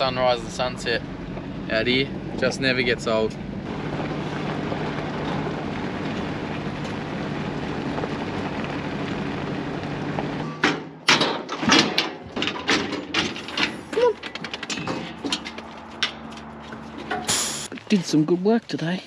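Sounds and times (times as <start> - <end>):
engine running: 0.0 - 11.0, 12.2 - 18.2
sharp knocks and clatters: 10.1 - 17.4.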